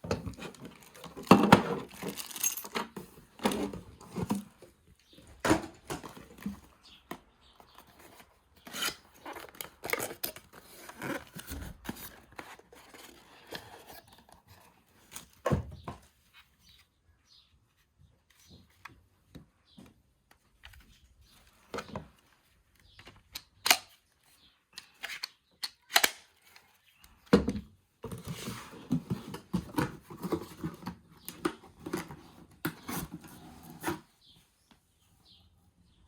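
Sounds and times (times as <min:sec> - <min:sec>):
objects clicking and knocking: 0:00.0 - 0:04.6.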